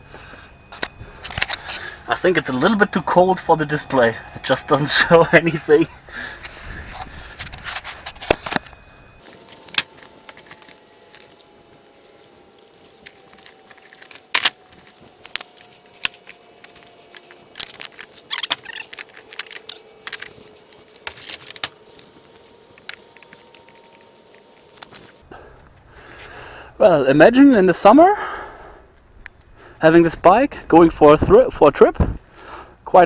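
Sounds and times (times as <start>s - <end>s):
small hard gear clicking and rattling: 6.4s - 25.2s.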